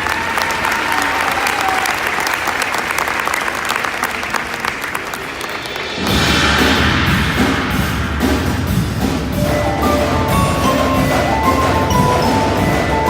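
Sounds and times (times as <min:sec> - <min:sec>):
audience applauding: 0:00.0 - 0:06.2, 0:09.4 - 0:13.0
marching band with drums: 0:05.5 - 0:13.0.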